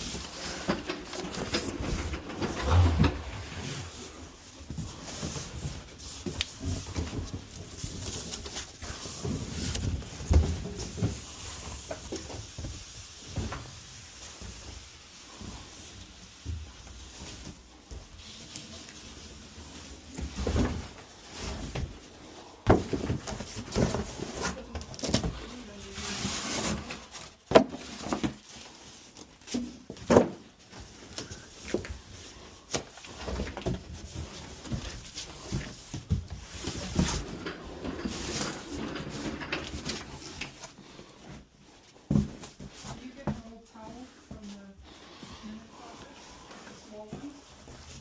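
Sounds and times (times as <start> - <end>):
knocks and clunks of handling: 22.6 - 25.6.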